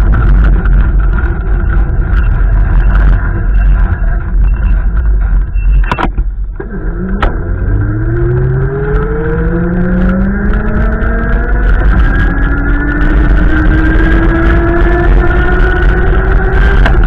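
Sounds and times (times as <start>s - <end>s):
wind on microphone: 0.0s - 17.0s
vehicle engine accelerating: 6.5s - 17.0s.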